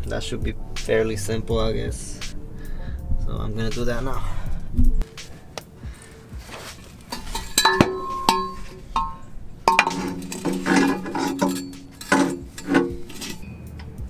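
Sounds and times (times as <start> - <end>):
metal clinks and clanks: 7.0 - 14.0.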